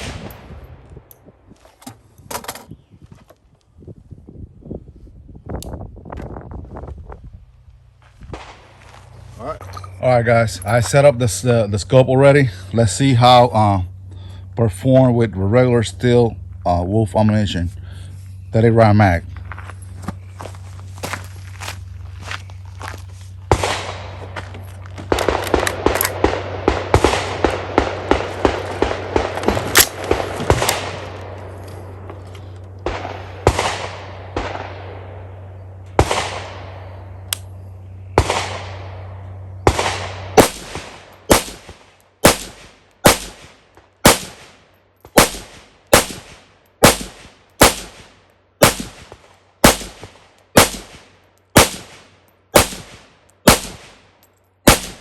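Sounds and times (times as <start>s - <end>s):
rifle shots echoing: 0.0s - 0.8s, 23.4s - 24.4s, 25.0s - 32.0s, 32.8s - 37.3s, 38.0s - 55.0s.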